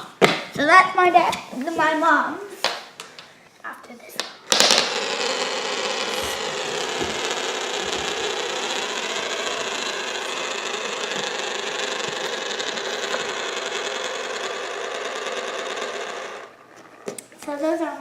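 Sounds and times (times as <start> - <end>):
marble spinners whirring rattle: 4.5 - 17.3.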